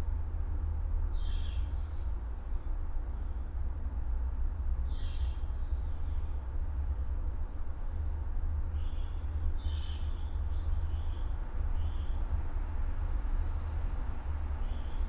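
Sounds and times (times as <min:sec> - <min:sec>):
steady low rumble: 0:00.0 - 0:09.6
bird calls and chirps: 0:04.9 - 0:06.3.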